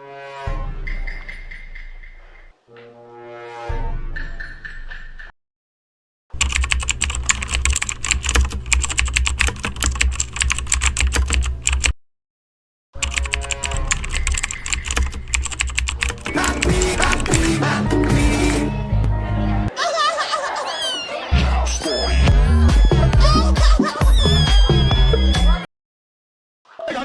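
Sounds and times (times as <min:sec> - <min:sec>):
rapid keyboard typing: 0:06.4 - 0:12.0, 0:13.0 - 0:17.6.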